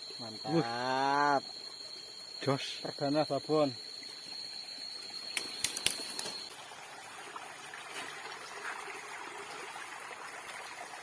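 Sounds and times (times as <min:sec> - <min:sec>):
thin high tone: 0:00.0 - 0:06.6
stream water running: 0:00.0 - 0:11.0
sharp clicks: 0:05.3 - 0:06.3.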